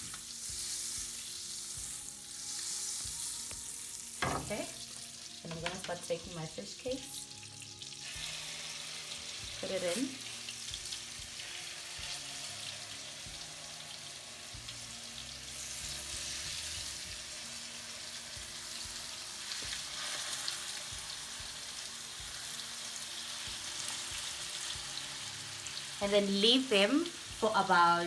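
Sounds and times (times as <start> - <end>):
fish cakes sizzling in a pan: 0.0 - 28.0.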